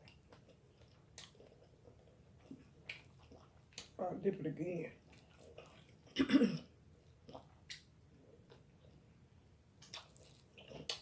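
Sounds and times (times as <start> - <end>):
faint chewing: 0.0 - 4.0, 5.0 - 9.2, 9.8 - 11.0
mouth clicks and smacks: 7.3 - 7.9, 9.8 - 11.0.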